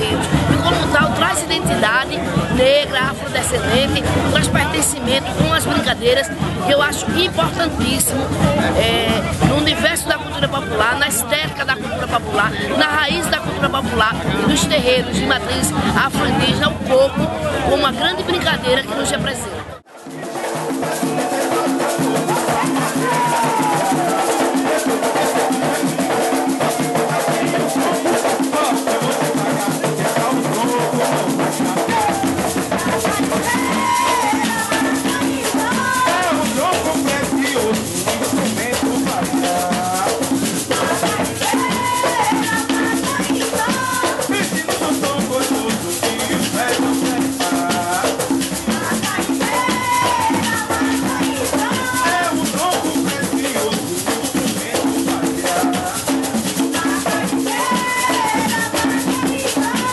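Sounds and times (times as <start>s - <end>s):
deeper drum: 0.0s - 19.4s
drums: 0.0s - 59.9s
voices singing: 0.0s - 59.9s
shaker rattling: 19.9s - 59.9s.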